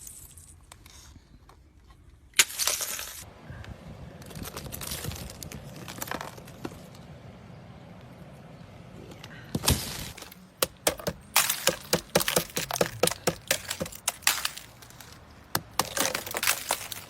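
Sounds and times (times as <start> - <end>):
ice cracking and crunching: 9.6 - 17.0.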